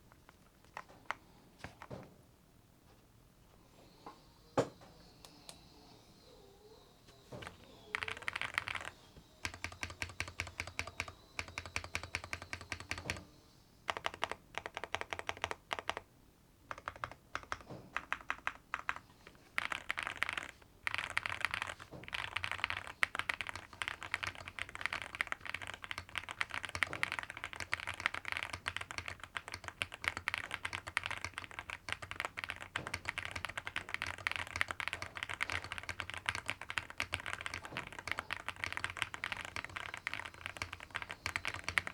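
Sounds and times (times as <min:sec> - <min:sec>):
mechanical keyboard typing: 0:07.4 - 0:13.2, 0:13.9 - 0:16.1, 0:16.7 - 0:41.9.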